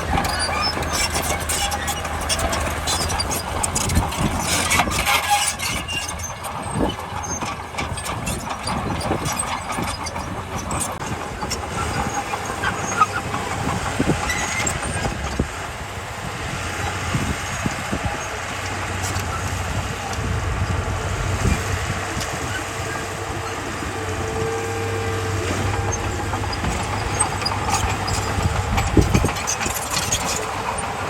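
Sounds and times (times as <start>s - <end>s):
diesel engine running: 0.0s - 31.0s
sharp clanks and knocks: 25.3s - 31.0s.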